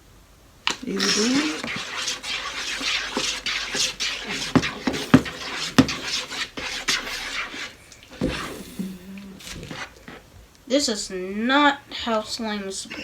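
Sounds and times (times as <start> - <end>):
spoon scraping a bowl: 0.7 - 10.3.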